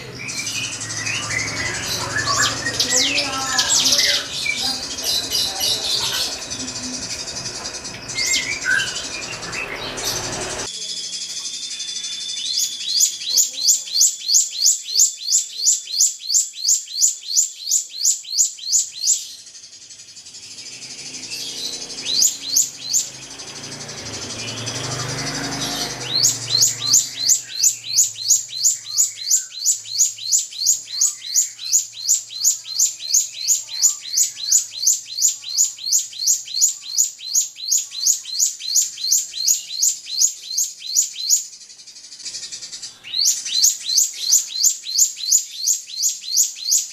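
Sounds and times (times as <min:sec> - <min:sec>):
bird calling sharp high notes: 0:00.0 - 0:15.5.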